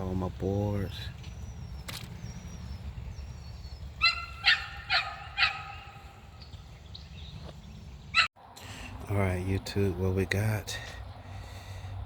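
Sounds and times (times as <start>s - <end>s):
dog barking: 4.0s - 6.0s.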